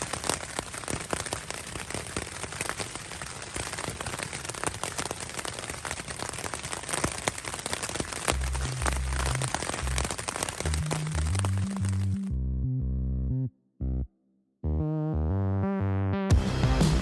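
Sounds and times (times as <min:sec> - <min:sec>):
raindrops tapping on a surface: 0:00.0 - 0:12.3
steady hiss of rain: 0:00.0 - 0:12.3
low hum: 0:10.7 - 0:14.1.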